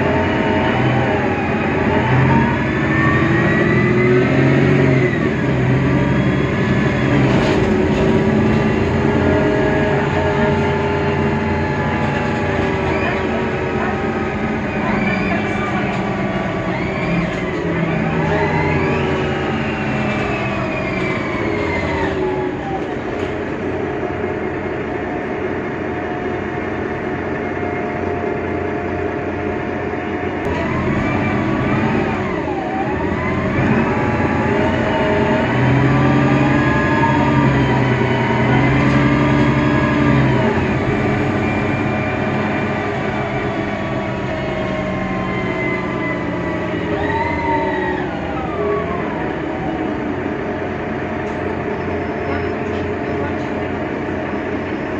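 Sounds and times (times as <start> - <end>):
bus diesel engine whining: 0.0 - 54.9.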